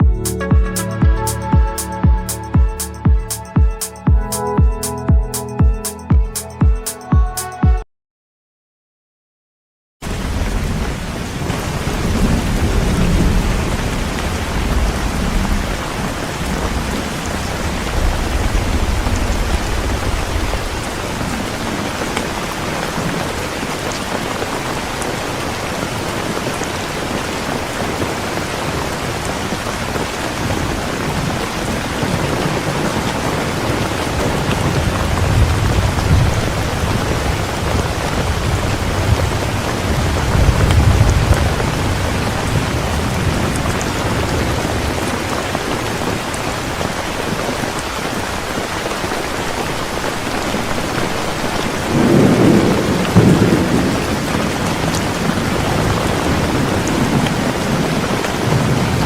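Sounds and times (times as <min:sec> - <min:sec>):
rain pouring: 0:10.0 - 0:59.0
thunder rumbling: 0:10.1 - 0:47.8, 0:51.5 - 0:59.0.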